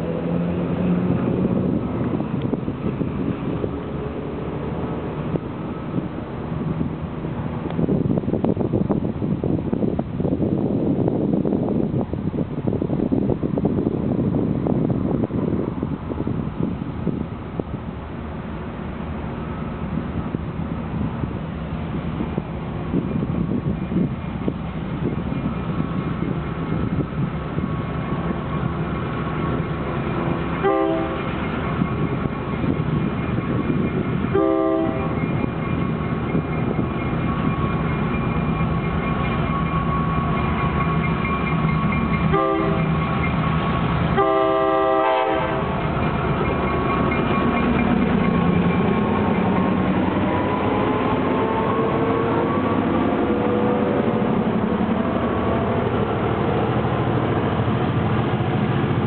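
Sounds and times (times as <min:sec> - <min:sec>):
diesel locomotive engines running: 0:00.0 - 0:59.0
locomotive horn blasts: 0:30.6 - 0:31.4, 0:34.3 - 0:35.2, 0:42.3 - 0:43.0, 0:44.1 - 0:45.8.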